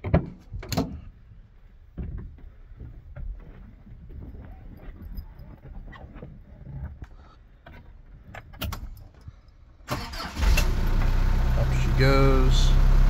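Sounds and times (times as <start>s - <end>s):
diesel engine cranking and running: 9.9s - 13.0s.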